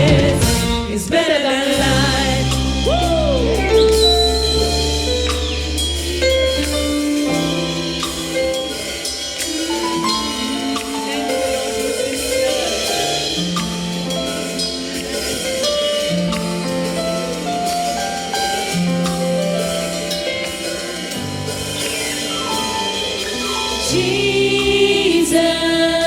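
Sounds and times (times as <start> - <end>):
moving bass line: 0.0 - 1.0, 1.8 - 8.6
gospel instrumental music: 0.0 - 26.0.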